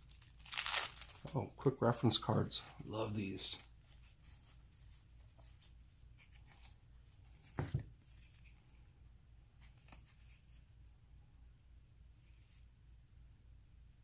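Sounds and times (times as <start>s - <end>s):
cards rustling: 0.0s - 1.4s.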